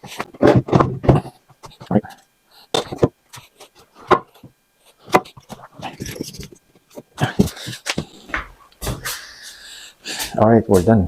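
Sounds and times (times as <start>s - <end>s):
wooden cabinets knocking and clattering: 0.4s - 1.3s.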